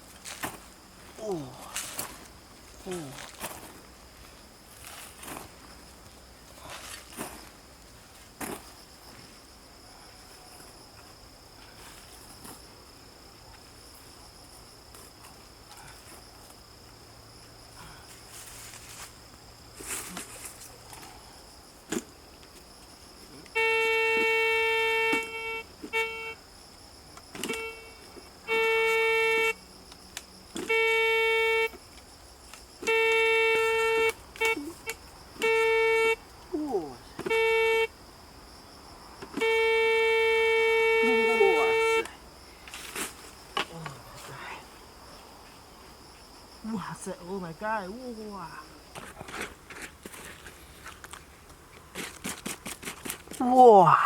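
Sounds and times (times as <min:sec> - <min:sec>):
metal detector beeping: 0:23.6 - 0:26.4, 0:27.3 - 0:29.6, 0:30.6 - 0:31.8, 0:32.8 - 0:36.2, 0:37.2 - 0:37.9, 0:39.3 - 0:42.1.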